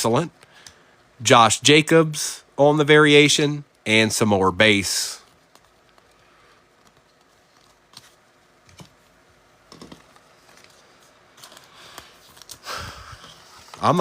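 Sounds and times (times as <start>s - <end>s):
faint clicks and taps: 5.2s - 6.2s, 6.8s - 9.0s.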